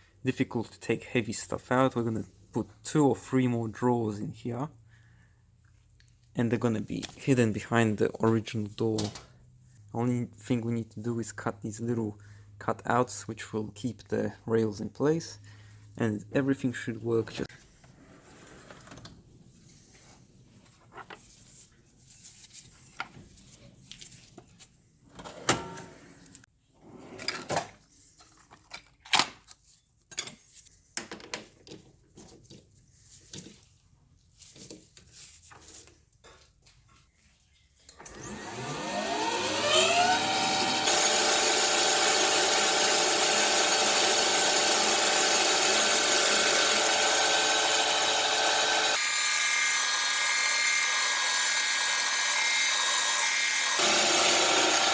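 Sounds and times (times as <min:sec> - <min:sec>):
power tool whining: 0:37.9 - 0:54.9.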